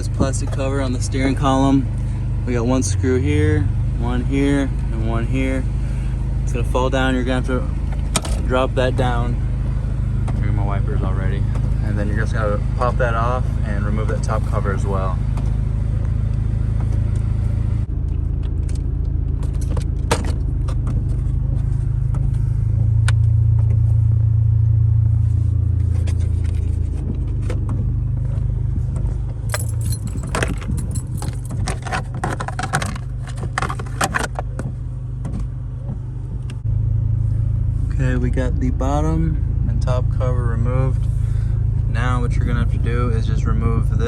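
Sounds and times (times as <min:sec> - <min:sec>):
steady low rumble: 0:00.0 - 0:44.0.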